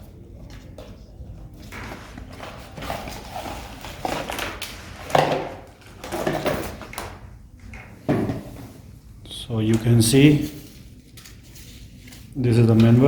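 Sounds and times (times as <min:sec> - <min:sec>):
packaging rustling: 0:01.6 - 0:07.2.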